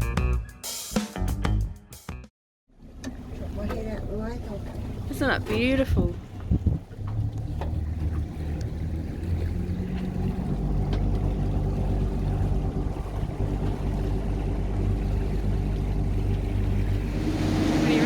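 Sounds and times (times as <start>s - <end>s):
vehicle engine droning: 6.8s - 18.0s.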